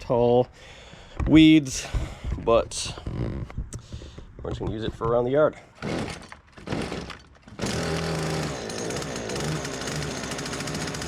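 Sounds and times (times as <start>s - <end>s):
brushcutter engine starting and running: 5.8s - 11.0s.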